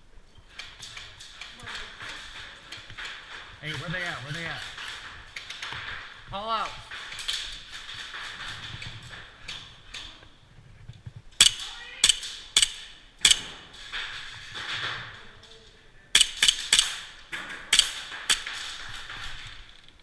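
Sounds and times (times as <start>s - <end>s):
airsoft gun shots: 11.4s - 13.7s, 16.2s - 19.2s.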